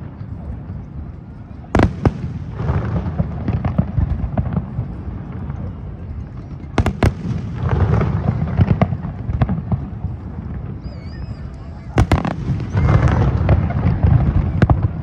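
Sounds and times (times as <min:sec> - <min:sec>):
fireworks bursting and crackling: 0:00.0 - 0:15.0
loud firework bangs: 0:01.7 - 0:05.6, 0:06.6 - 0:11.0, 0:11.8 - 0:15.0.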